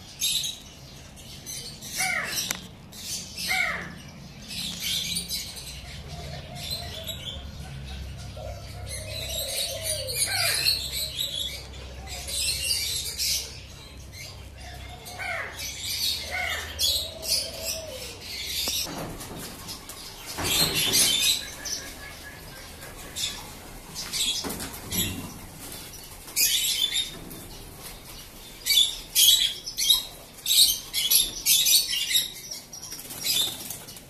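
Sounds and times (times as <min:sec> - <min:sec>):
small birds twittering: 0:00.0 - 0:34.0
birds squawking: 0:01.6 - 0:33.8
drawn-out bird calls: 0:19.6 - 0:31.9.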